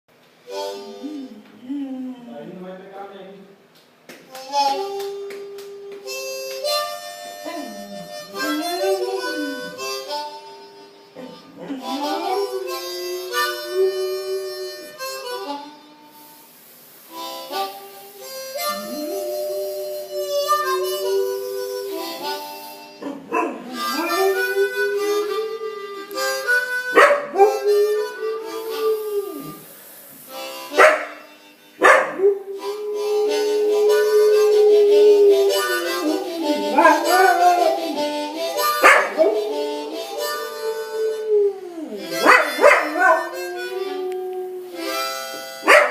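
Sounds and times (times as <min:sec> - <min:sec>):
harmonica playing: 0:00.4 - 0:01.9, 0:04.3 - 0:45.9
dog howling: 0:11.2 - 0:14.9, 0:18.6 - 0:29.7, 0:31.8 - 0:45.9.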